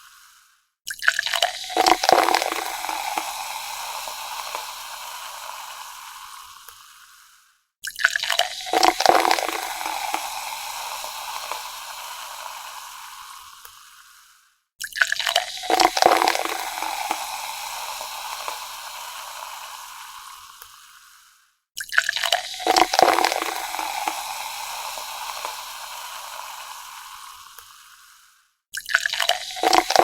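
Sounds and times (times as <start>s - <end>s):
water splashing: 15.2s - 17.5s, 22.2s - 25.6s, 29.1s - 30.0s.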